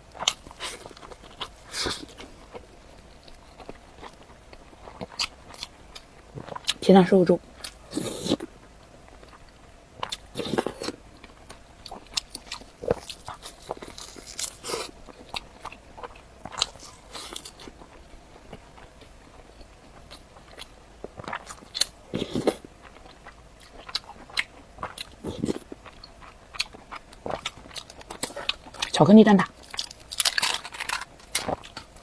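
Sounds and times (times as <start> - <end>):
person biting and chewing: 10.0 - 17.7, 29.6 - 32.0.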